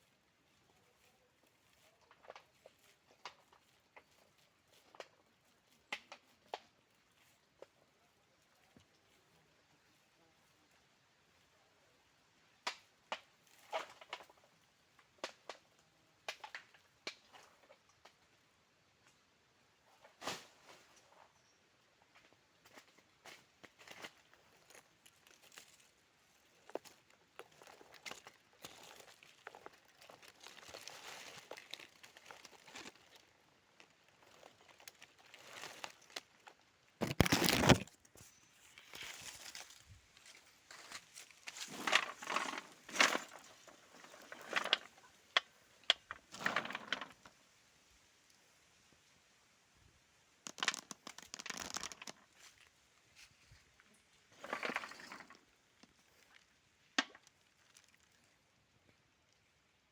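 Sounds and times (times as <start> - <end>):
berries stripped by hand: 37.0 - 38.0
fruit stripped by hand rustling: 37.0 - 41.8.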